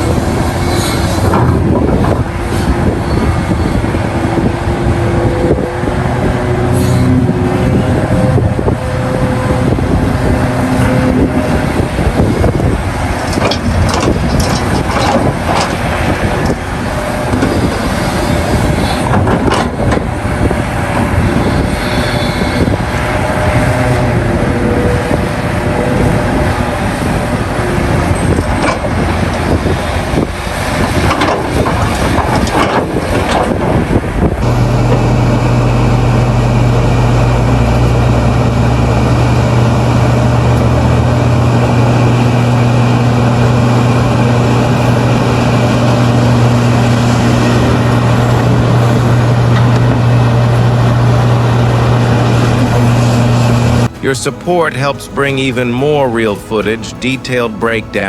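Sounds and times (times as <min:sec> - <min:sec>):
diesel machinery engines: 0:00.0 - 0:58.0
knocks and clatter: 0:13.2 - 0:16.6, 0:19.0 - 0:20.1, 0:28.4 - 0:29.4, 0:30.8 - 0:33.8.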